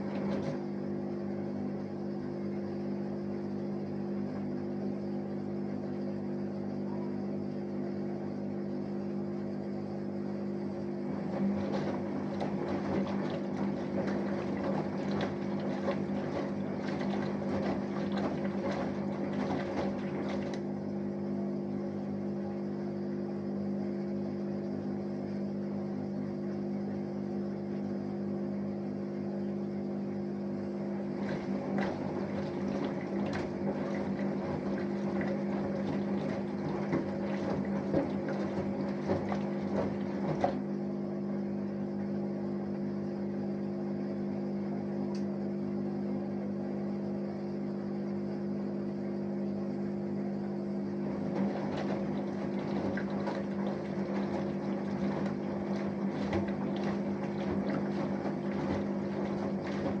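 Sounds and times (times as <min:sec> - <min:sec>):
laundry sloshing in drum: 0:00.0 - 0:22.9, 0:30.2 - 0:42.3, 0:49.9 - 1:00.0
washing machine hum: 0:00.0 - 1:00.0.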